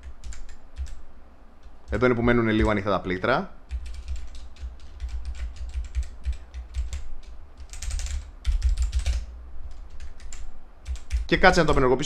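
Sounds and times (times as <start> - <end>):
mechanical keyboard keys clacking: 0.1 - 1.0, 1.9 - 2.8, 3.7 - 11.3.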